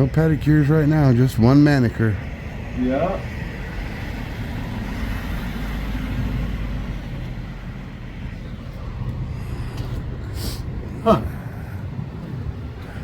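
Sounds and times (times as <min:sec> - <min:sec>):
low rumble of road traffic: 0:00.0 - 0:13.0
vehicle engine humming: 0:00.0 - 0:13.0.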